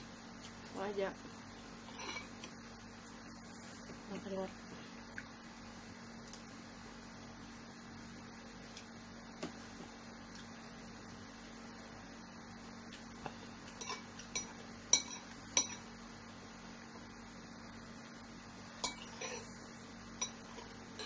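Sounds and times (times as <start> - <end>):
faint steady hum: 0.0 - 21.0
spoon clinking against a bowl: 13.8 - 15.8, 18.8 - 19.5, 20.2 - 21.0.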